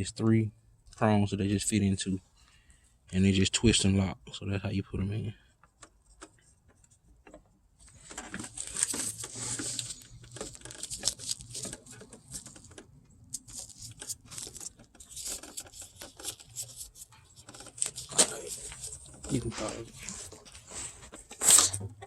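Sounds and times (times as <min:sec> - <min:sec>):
plastic parts rustling and clicking: 0:05.6 - 0:22.0.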